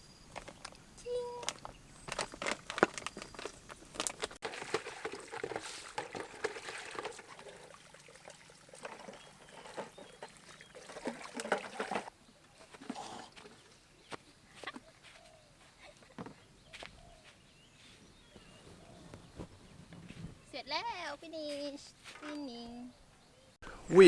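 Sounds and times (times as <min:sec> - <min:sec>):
water pouring and trickling: 0:01.2 - 0:12.1.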